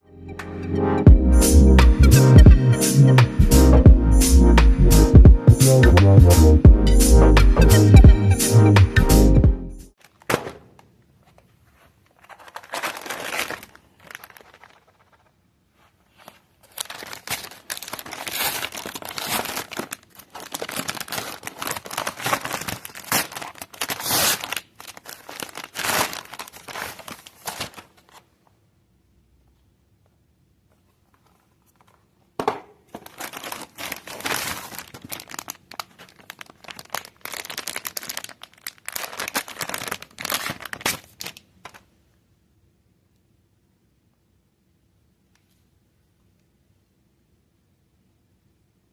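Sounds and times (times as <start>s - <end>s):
packaging crinkling and tearing: 10.0s - 28.3s, 32.9s - 41.9s.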